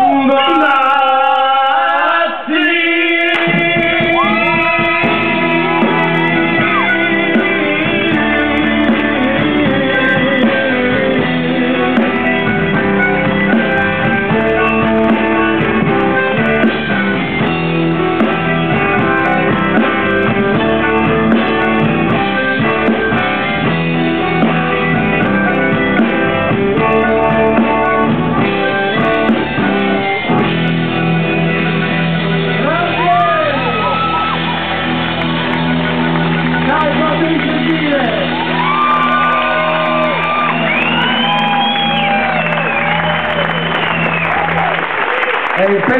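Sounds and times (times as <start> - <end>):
person singing: 0.0 - 12.4
guitar: 0.0 - 45.9.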